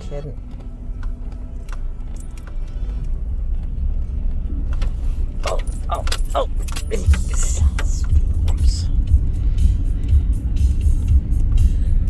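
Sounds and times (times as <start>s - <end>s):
vehicle rumbling on dirt track: 0.0s - 12.0s
loose items jangling: 0.4s - 8.9s.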